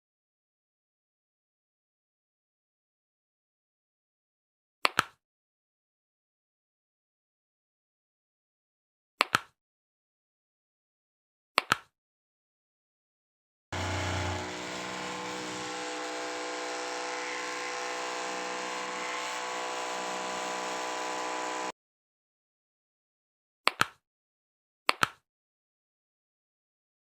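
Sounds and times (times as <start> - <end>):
electric massager humming: 13.8 - 21.7.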